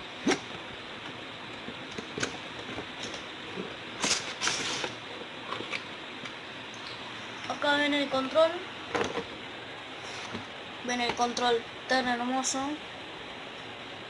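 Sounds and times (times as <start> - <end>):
steady hiss: 3.0 - 5.0.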